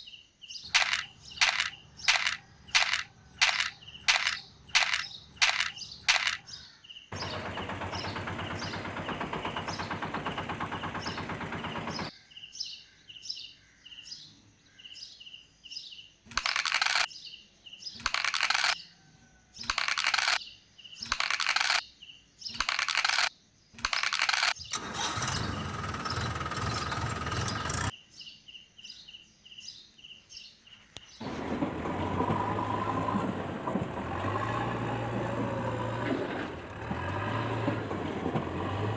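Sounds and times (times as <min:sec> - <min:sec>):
high chirping beeps: 0:00.7 - 0:06.6, 0:16.3 - 0:17.1, 0:18.0 - 0:18.8, 0:19.6 - 0:20.4, 0:21.1 - 0:21.8.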